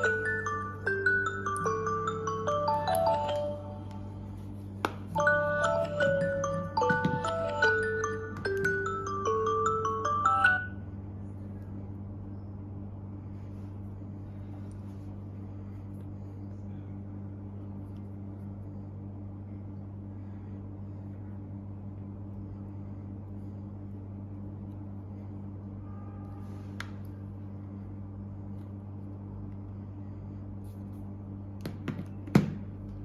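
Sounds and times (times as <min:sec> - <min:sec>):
steady low hum: 0:00.0 - 0:33.0.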